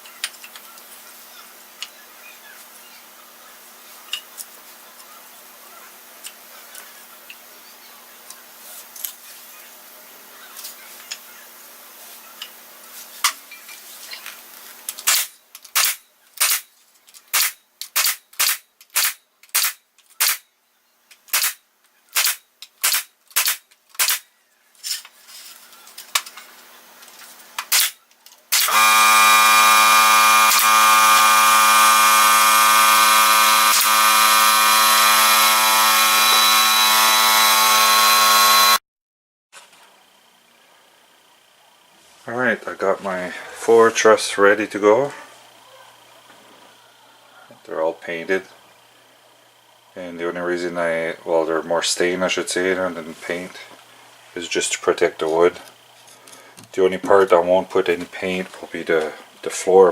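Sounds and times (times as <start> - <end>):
loud horn-like buzzing tone: 28.6 - 38.8.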